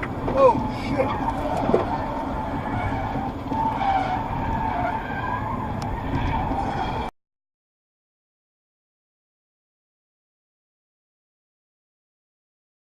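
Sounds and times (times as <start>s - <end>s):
car road and engine rumble: 0.0s - 7.1s.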